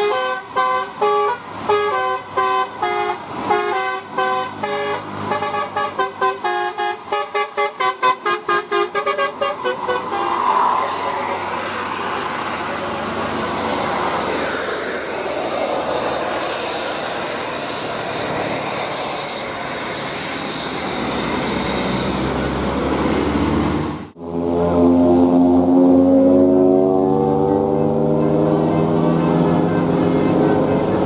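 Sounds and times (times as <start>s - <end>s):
musical bus horn: 0.0s - 10.4s
passing bus rumble: 0.0s - 31.0s.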